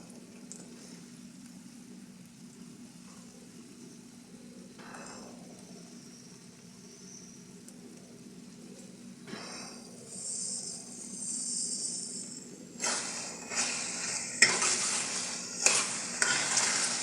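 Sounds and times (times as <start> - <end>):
food sizzling in a pot: 10.1 - 17.0.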